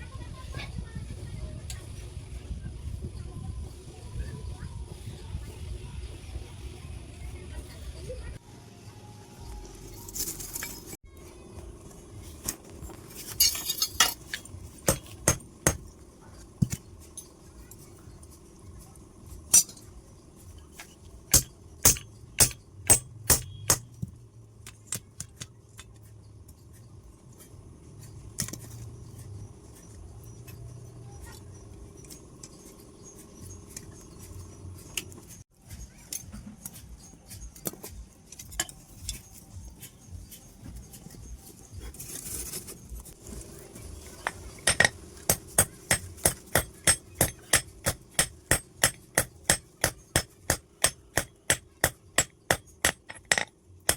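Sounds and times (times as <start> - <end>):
steady low hum: 0.0 - 53.9
hammer striking steel on anvil: 13.2 - 15.9, 20.8 - 25.9, 44.2 - 53.9.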